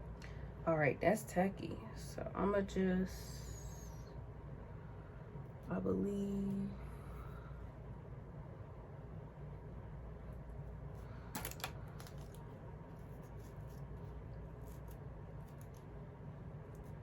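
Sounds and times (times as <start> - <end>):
low steady hum: 0.0 - 17.0
objects clicking and tapping: 11.4 - 12.4.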